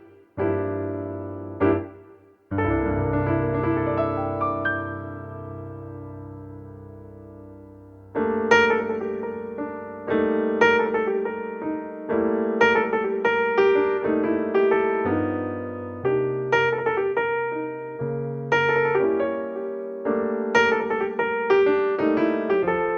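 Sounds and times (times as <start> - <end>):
piano chords and melody: 0.0 - 22.9.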